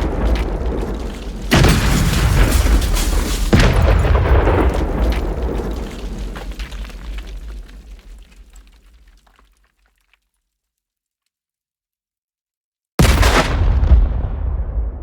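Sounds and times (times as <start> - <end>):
black powder charge booms: 0.0 - 8.2, 13.0 - 15.0.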